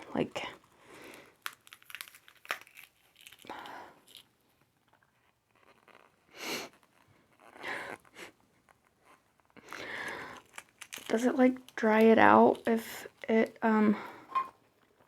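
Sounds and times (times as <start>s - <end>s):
crackling rustles: 0.4s - 13.3s
eggshell cracking by hand: 1.0s - 6.2s, 8.7s - 13.3s.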